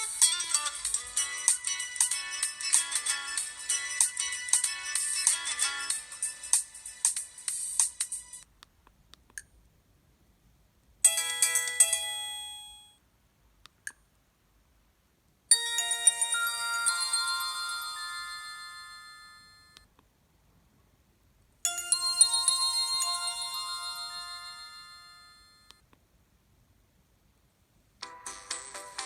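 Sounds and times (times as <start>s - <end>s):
phone ringtone melody: 0.0s - 8.4s, 11.0s - 13.0s, 15.5s - 19.8s, 21.7s - 25.8s.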